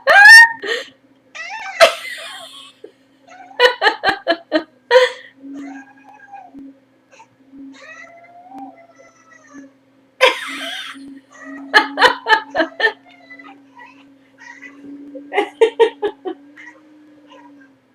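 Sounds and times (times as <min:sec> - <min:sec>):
person laughing: 0:00.0 - 0:00.9, 0:01.8 - 0:02.9, 0:03.6 - 0:05.3, 0:10.2 - 0:13.1, 0:15.2 - 0:16.4
cat wavering call: 0:00.0 - 0:17.8
person coughing: 0:10.2 - 0:11.0.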